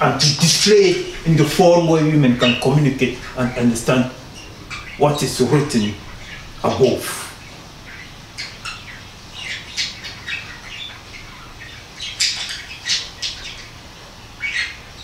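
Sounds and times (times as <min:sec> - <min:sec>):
high-pitched bird squawks and chirps: 0:07.4 - 0:13.8.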